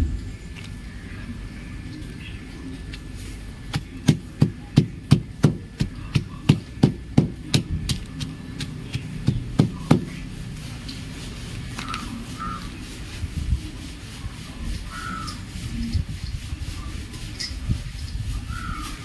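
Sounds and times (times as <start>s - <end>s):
chalk crunching: 0.5s - 19.0s.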